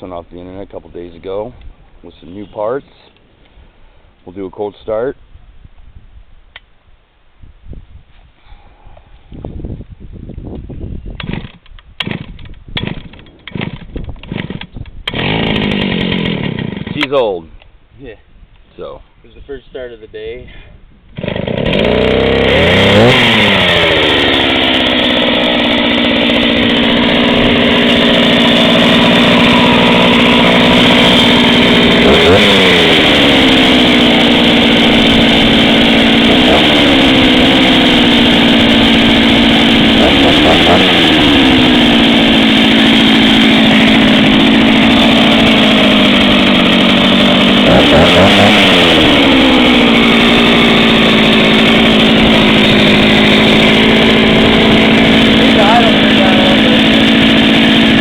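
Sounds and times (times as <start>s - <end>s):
chainsaw idling and revving: 11.2s - 17.4s, 21.1s - 58.0s.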